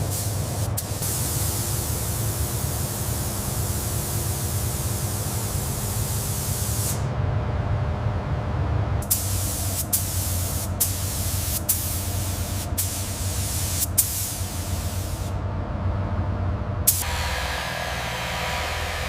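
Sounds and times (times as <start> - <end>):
pressurised spray hissing: 0.0 - 7.0, 9.0 - 15.3
steady low hum: 0.0 - 19.0.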